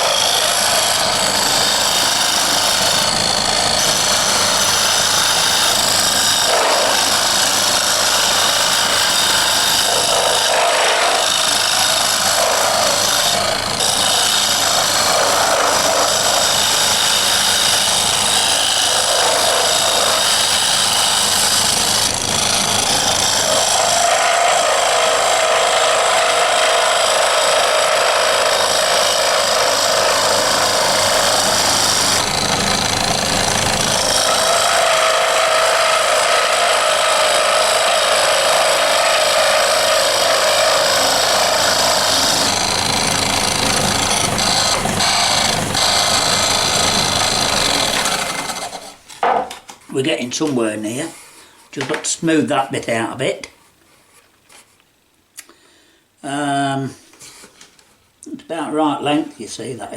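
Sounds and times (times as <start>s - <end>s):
lathe motor hum: 0.0s - 49.0s
tool scraping wood: 0.0s - 54.8s, 57.1s - 58.0s.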